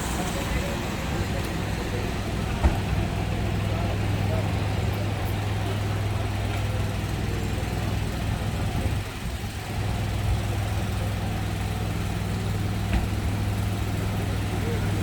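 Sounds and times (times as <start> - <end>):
street traffic engines humming: 0.0 - 15.0.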